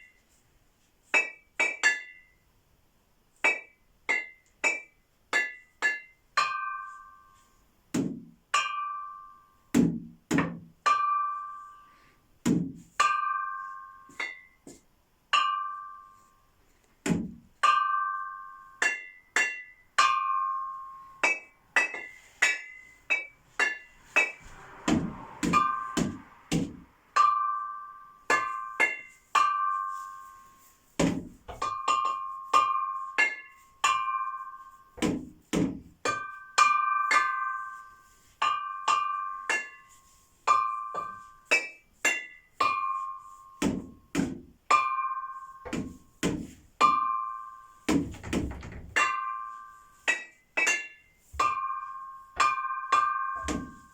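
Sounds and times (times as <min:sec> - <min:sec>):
sharp ringing strikes: 0:17.6 - 0:30.0.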